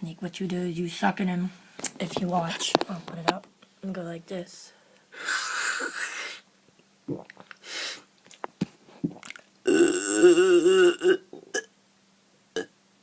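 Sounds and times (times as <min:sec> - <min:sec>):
loud burp: 0:09.1 - 0:11.7.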